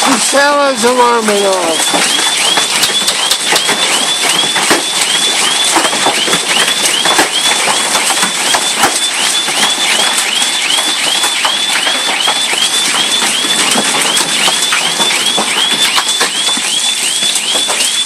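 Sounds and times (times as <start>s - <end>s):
car alarm whooping: 0.0s - 18.0s
hailstones clattering on cars: 0.0s - 18.0s.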